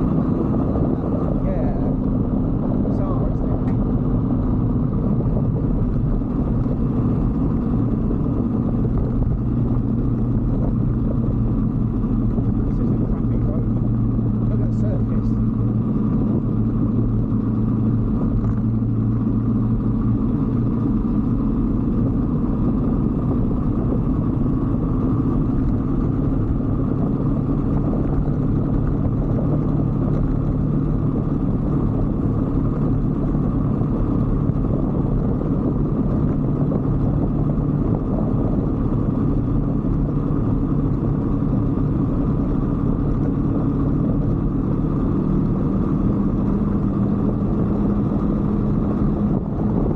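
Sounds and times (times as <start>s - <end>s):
motorcycle engine cruising: 0.0s - 49.9s.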